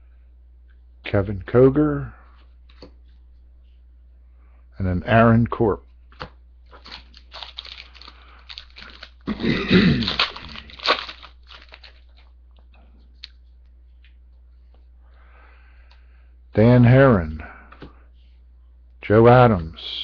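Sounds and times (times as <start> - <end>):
foil wrapper tearing and crinkling: 6.7 - 12.3.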